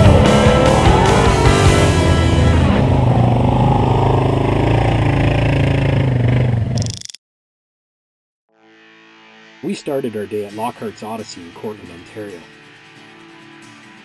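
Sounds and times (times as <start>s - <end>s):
rock music: 0.0s - 5.0s, 8.6s - 14.0s
atv engine running: 0.0s - 7.0s.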